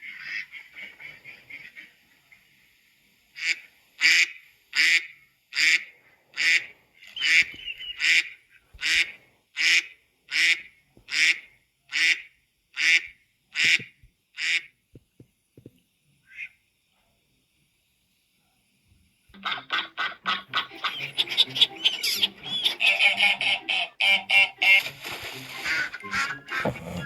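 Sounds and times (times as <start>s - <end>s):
waterfowl honking: 3.4s - 14.7s, 19.4s - 27.0s.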